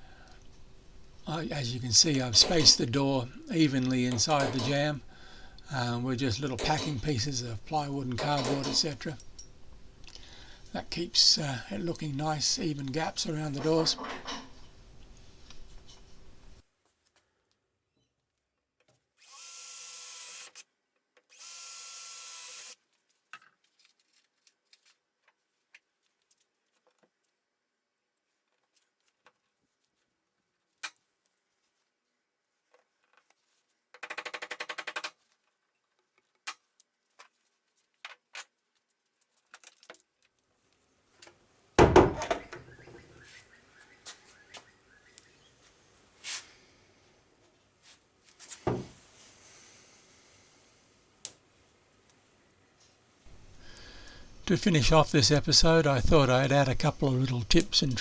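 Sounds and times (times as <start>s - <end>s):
handling noise: 0.0s - 16.6s, 41.8s - 47.1s, 48.3s - 50.5s, 53.3s - 58.0s
loud thump: 41.8s - 42.6s, 48.7s - 49.0s.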